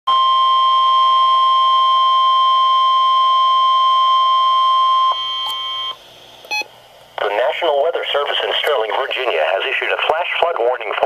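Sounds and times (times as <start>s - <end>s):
steady alarm tone: 0.1s - 6.6s.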